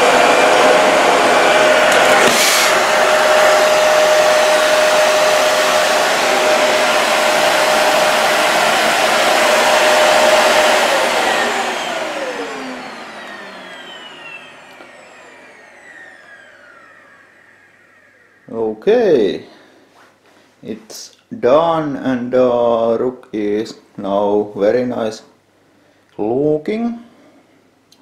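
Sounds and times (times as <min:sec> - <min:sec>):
vacuum cleaner motor whine: 0:00.0 - 0:19.8.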